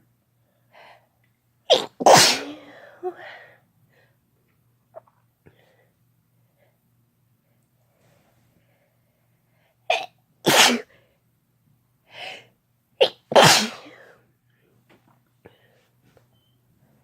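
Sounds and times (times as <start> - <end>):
person sneezing: 1.7 - 3.2, 9.9 - 10.9, 13.0 - 14.2.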